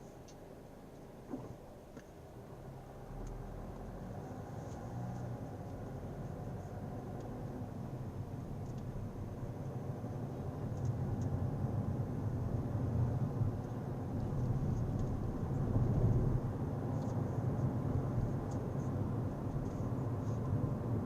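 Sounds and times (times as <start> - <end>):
car engine and road noise: 0.0 - 21.0
faint small ticks: 8.6 - 8.9.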